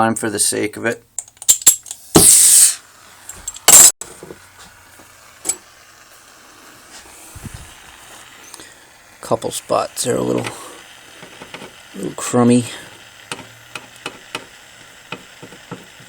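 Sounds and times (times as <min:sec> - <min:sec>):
flux sizzling hiss: 0:01.6 - 0:16.0.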